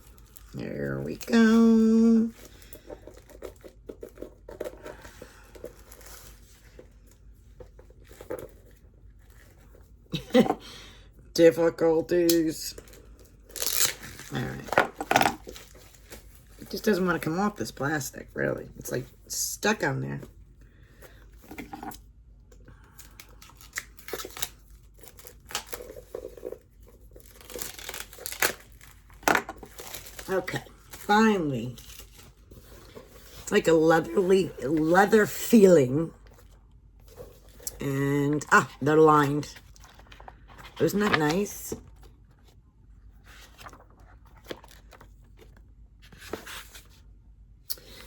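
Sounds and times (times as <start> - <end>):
plastic shrink-wrap crinkling: 23.2 - 31.1.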